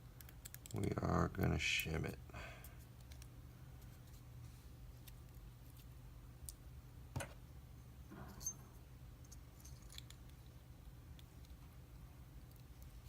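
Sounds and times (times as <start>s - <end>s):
low hum: 3.4s - 13.0s.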